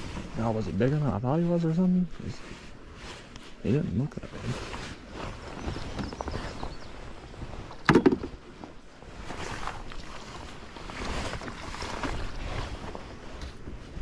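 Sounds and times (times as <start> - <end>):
water around boat: 0.0 - 14.0
wind: 0.0 - 14.0
loud thump: 7.9 - 8.3.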